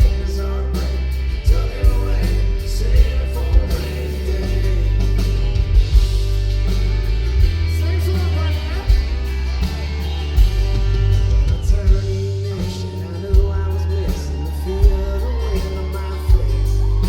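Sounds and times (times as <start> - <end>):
bass: 0.0 - 17.0
drums: 0.0 - 17.0
electric guitar: 0.0 - 17.0.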